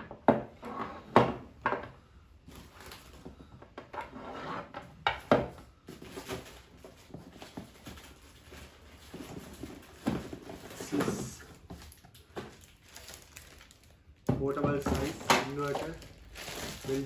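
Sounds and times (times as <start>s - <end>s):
rustling packaging: 2.4s - 3.4s, 5.8s - 17.0s.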